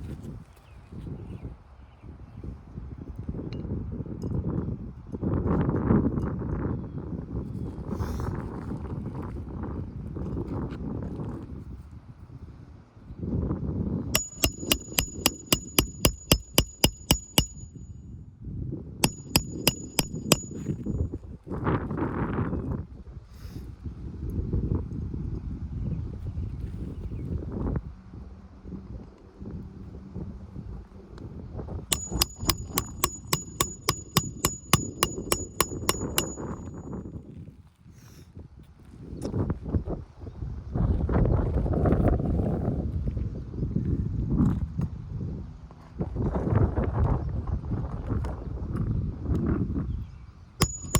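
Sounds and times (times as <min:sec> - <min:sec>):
hammer striking nails: 0:14.2 - 0:17.8, 0:19.0 - 0:20.8, 0:31.9 - 0:36.7, 0:50.6 - 0:50.9.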